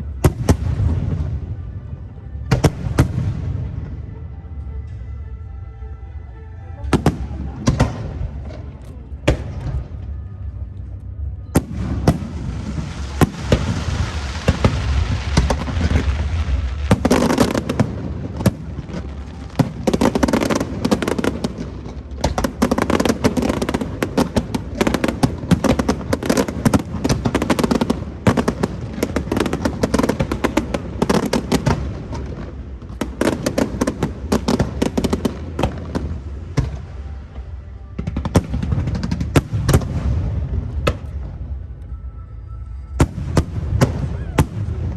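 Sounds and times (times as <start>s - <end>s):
fireworks crackling and popping: 0.0s - 4.3s, 11.6s - 41.9s, 42.9s - 44.9s
fireworks hissing: 11.8s - 37.0s.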